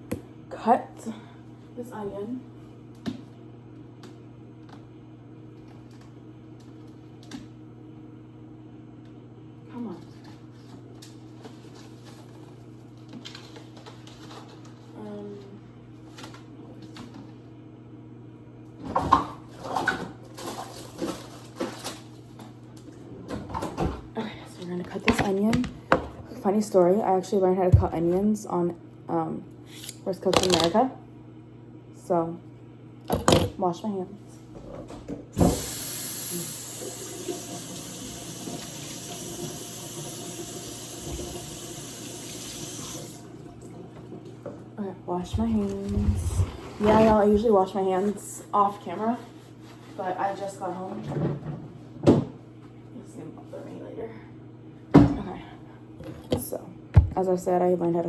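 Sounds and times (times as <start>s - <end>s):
microwave oven humming: 0.0s - 58.0s
kitchen items knocking and rustling: 24.8s - 26.3s, 30.3s - 30.8s, 33.1s - 33.6s, 45.3s - 47.7s, 56.0s - 57.3s.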